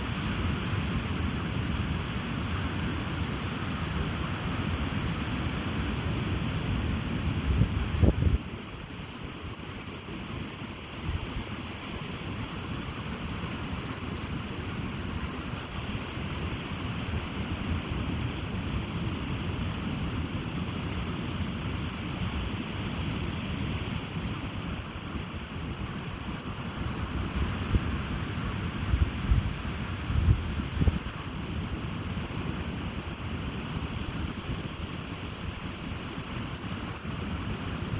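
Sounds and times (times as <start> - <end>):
ocean surf washing on beach: 0.0 - 37.9
wind buffeting microphone: 6.3 - 9.5, 24.0 - 37.9.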